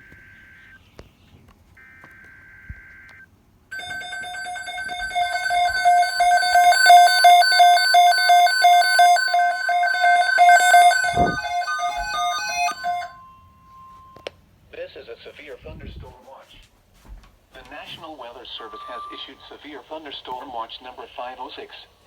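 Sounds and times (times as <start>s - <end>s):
buzzy data tone burst: 3.8s - 13.2s
steady electronic tone: 3.8s - 13.3s
pulsing electronic alarm tone: 3.8s - 14.2s, 18.6s - 19.5s.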